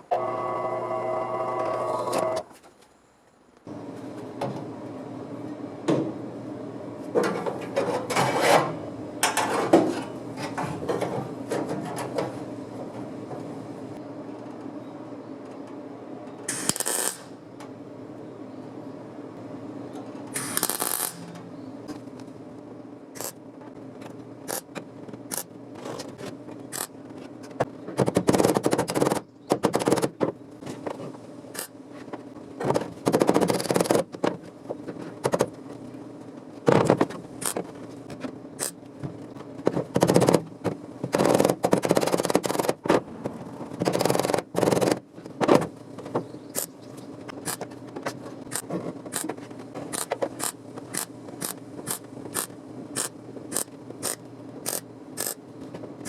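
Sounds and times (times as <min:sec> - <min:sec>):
steady low hum: 0:00.0 - 0:56.0.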